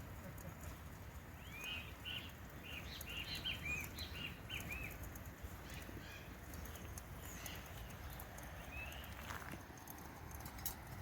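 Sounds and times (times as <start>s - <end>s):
bird chirping: 1.3s - 9.6s.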